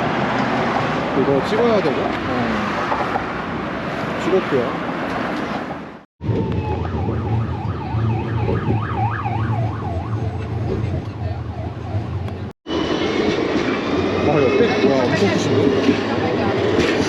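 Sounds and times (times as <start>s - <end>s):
low traffic hum: 0.0s - 17.0s
emergency siren yelping: 6.2s - 12.3s.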